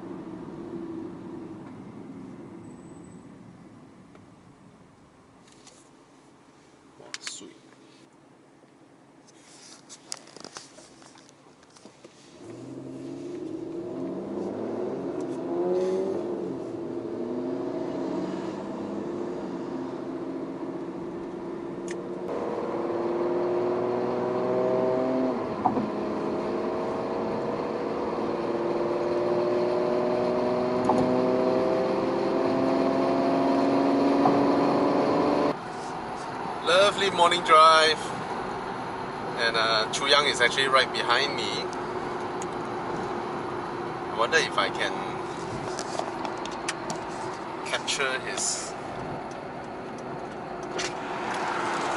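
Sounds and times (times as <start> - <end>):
car engine running under load: 12.3 - 39.9, 41.6 - 51.9.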